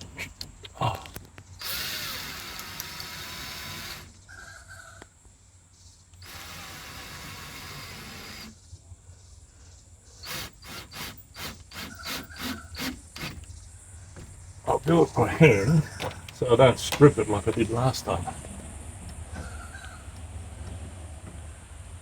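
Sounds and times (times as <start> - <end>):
cordless drill running: 1.6 - 4.2, 6.2 - 8.5, 10.2 - 13.6
clicks and knocks of tool handling: 15.9 - 17.2.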